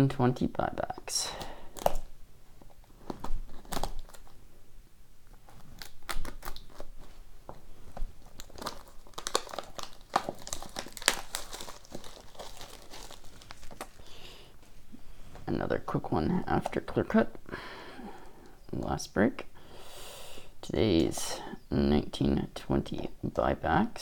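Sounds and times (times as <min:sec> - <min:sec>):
plastic wrapping crinkling: 0:01.2 - 0:04.4, 0:05.3 - 0:14.9.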